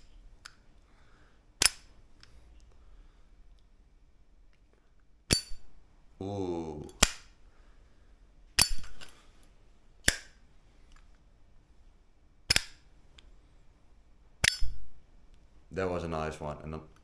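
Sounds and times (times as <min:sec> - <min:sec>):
lighter lid clacking: 0:05.3 - 0:05.7, 0:08.6 - 0:09.2, 0:10.0 - 0:10.4, 0:12.5 - 0:12.8, 0:14.4 - 0:14.9.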